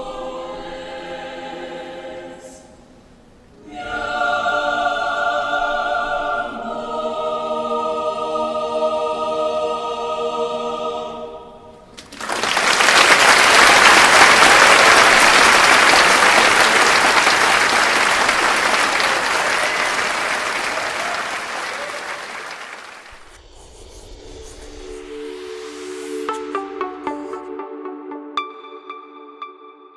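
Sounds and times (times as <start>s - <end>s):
choir holding sustained chord: 0.0s - 11.9s
audience applause: 12.0s - 23.2s.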